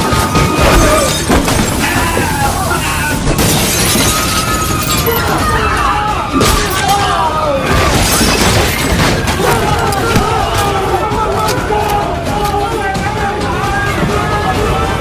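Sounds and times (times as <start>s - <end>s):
people shouting: 0.0s - 15.0s
glass shattering and crashing: 0.4s - 5.6s, 7.7s - 10.6s.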